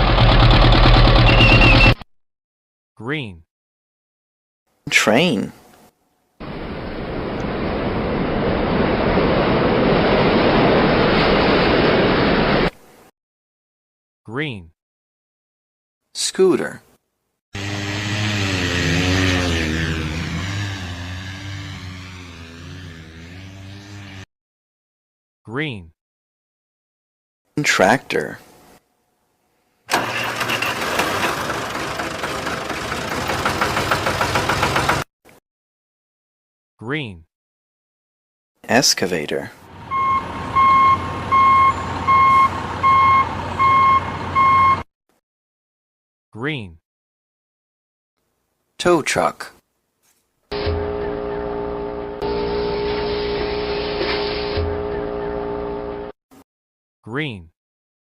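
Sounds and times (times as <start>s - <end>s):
tractor engine chugging: 0.0s - 2.0s, 29.9s - 35.0s.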